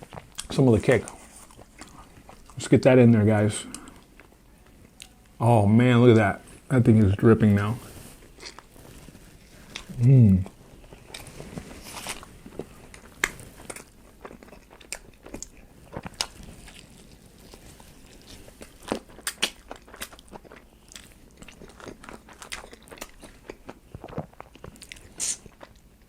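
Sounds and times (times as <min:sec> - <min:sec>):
wet chewing and mouth smacks: 0:00.0 - 0:02.6, 0:09.6 - 0:25.9.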